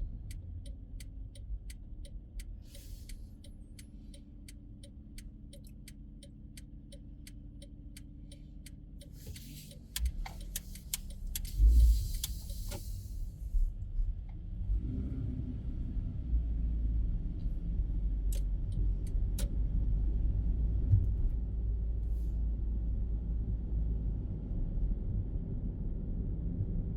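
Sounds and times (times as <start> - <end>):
turn signal ticking: 0.0 - 13.6, 18.1 - 19.6
car cabin hum: 0.0 - 13.7
road rumble: 0.0 - 26.9.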